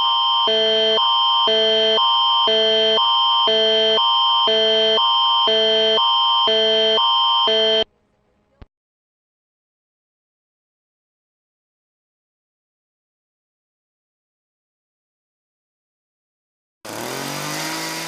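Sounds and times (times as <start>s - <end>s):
alternating electronic alert tone: 0.0s - 7.9s.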